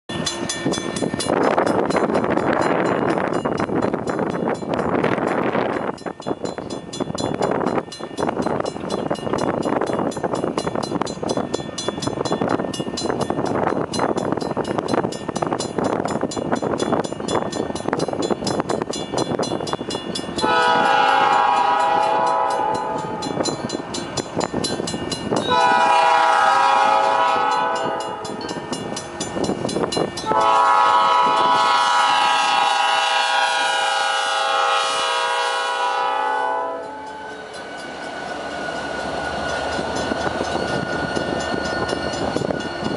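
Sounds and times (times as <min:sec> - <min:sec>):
train rolling rumble: 0:00.1 - 0:42.9
train horn blasts: 0:20.4 - 0:23.5, 0:25.4 - 0:28.5, 0:30.2 - 0:37.6.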